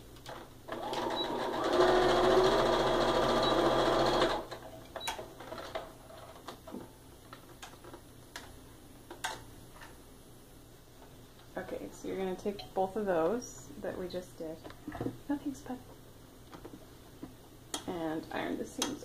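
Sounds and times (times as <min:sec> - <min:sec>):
sewing machine stitching: 0:00.7 - 0:04.6.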